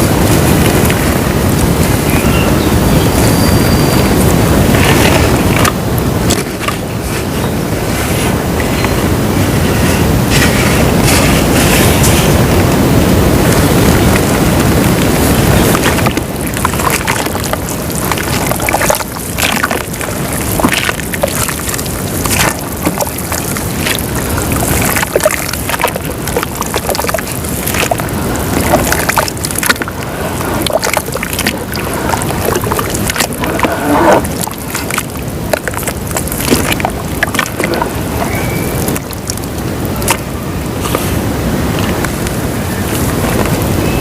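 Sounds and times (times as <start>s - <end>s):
dirt fizzing in water: 13.4s - 43.8s
small sharp cracks and plops: 34.3s - 37.8s, 38.8s - 40.3s.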